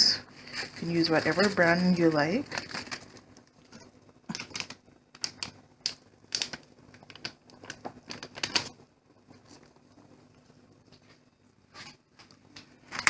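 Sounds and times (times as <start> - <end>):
packet crinkling and tearing: 0.4 - 8.8.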